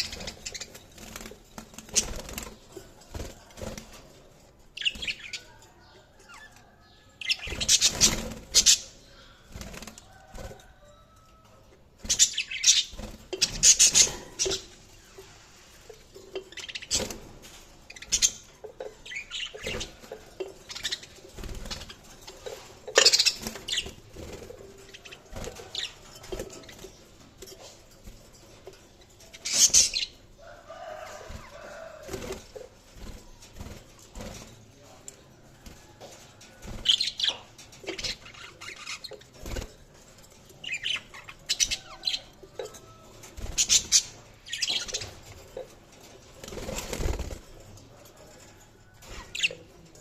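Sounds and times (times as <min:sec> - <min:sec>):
budgerigars chirping and chattering: 0:00.0 - 0:02.8, 0:04.6 - 0:10.8, 0:11.9 - 0:32.7, 0:36.8 - 0:47.9, 0:49.0 - 0:50.0.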